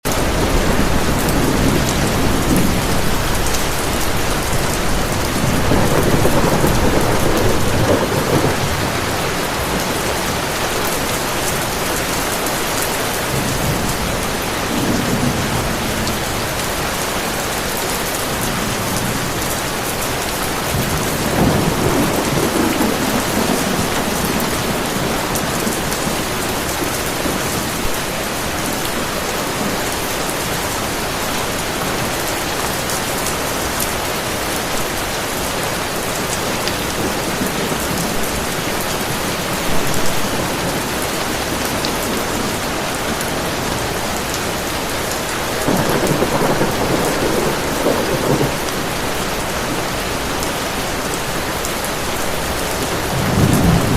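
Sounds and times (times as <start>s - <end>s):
heavy rain falling: 0.0s - 53.9s
rolling thunder: 0.1s - 19.6s, 20.4s - 32.1s, 45.4s - 51.5s, 52.1s - 53.9s.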